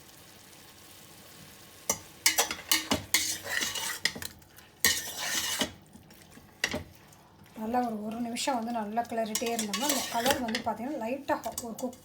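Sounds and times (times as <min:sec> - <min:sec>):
chicken sauteing in oil: 0:00.0 - 0:05.9
spoon scraping and knocking pot: 0:01.9 - 0:05.8, 0:09.2 - 0:10.8.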